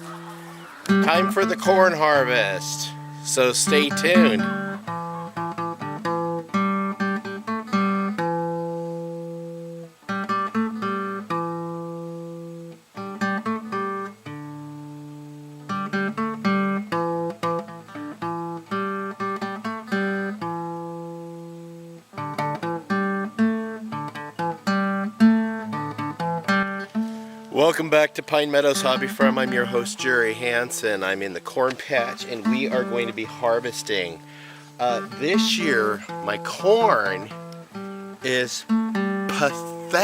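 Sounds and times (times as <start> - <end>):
acoustic guitar plucking: 0.0 - 40.0.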